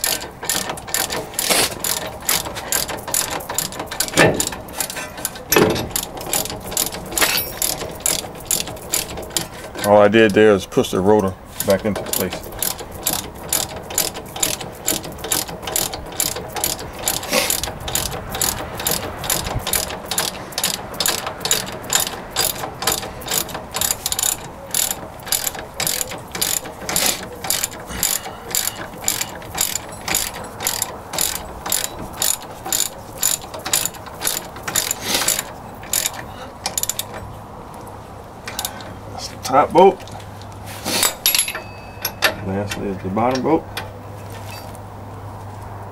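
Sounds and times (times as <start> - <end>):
socket ratchet clicking: 0.0 - 10.4, 11.6 - 37.2.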